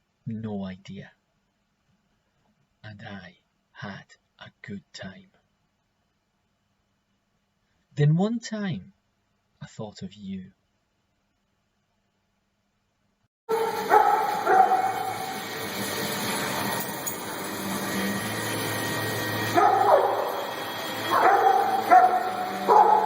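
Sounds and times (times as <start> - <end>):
dogs barking: 13.5 - 17.9, 19.4 - 23.0.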